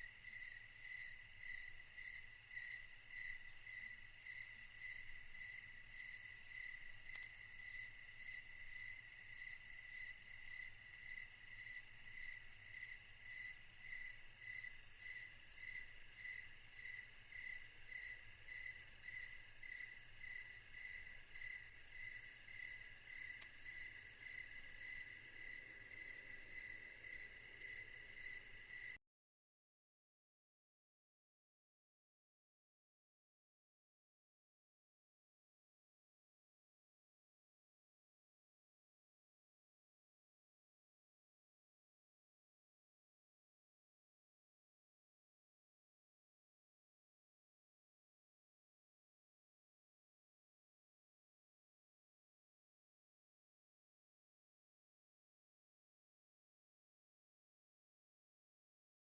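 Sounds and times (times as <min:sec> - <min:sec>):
crickets chirping: 0:00.0 - 0:29.0.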